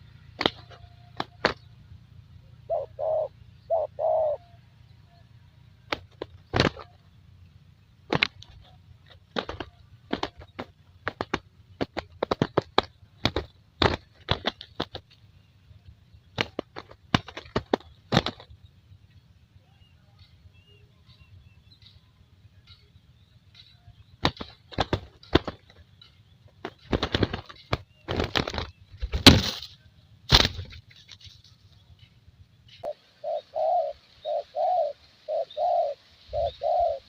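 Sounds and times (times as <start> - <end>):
dove wings flapping: 0.3 - 1.7, 5.8 - 7.0, 8.0 - 15.5, 16.2 - 18.6, 24.2 - 31.6.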